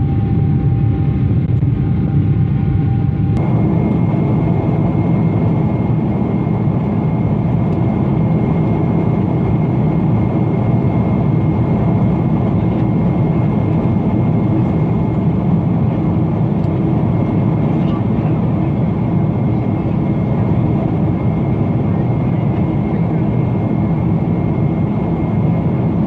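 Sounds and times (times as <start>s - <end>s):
low rumbling noise: 0.0s - 26.0s.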